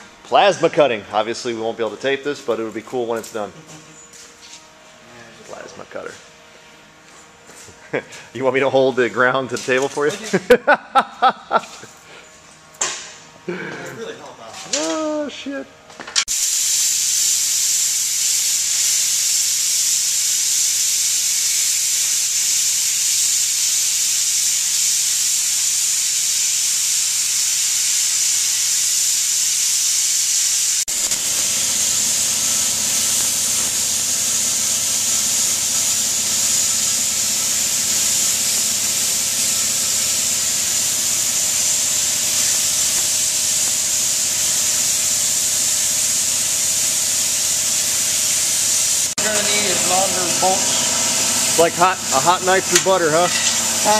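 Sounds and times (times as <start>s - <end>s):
plasma cutter hissing: 16.2s - 53.9s.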